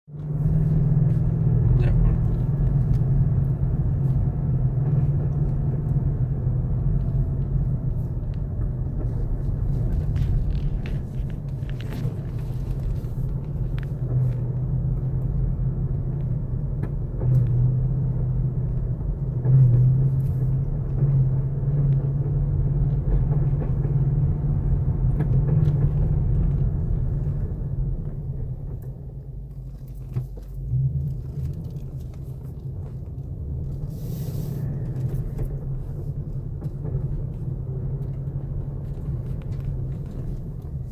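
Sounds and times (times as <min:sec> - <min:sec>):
car engine running at low speed: 0:00.1 - 0:40.9.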